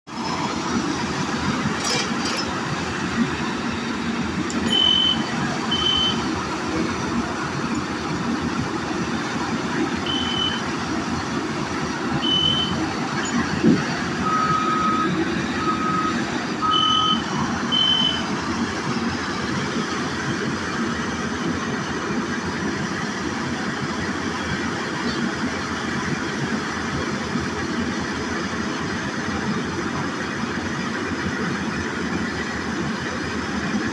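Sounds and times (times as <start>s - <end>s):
heavy construction machinery running: 0.1s - 33.9s
low reversing alarm beeps: 4.5s - 6.3s, 10.0s - 10.7s, 12.2s - 13.4s, 14.2s - 18.4s
high reversing alarm beeps: 4.5s - 6.4s, 10.0s - 10.7s, 12.2s - 13.5s, 14.2s - 18.4s.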